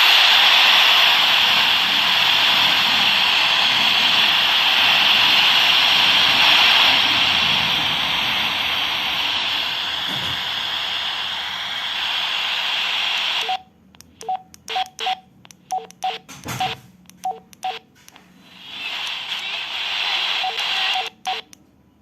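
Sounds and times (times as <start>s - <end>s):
radio static hiss: 0.0s - 13.7s, 14.7s - 15.2s, 17.6s - 17.8s, 18.4s - 21.6s
two-tone keypad beeps: 14.2s - 17.8s.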